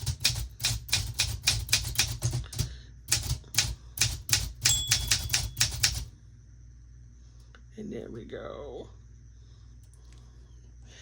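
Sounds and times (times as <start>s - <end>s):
manual typewriter typing: 0.0s - 6.1s.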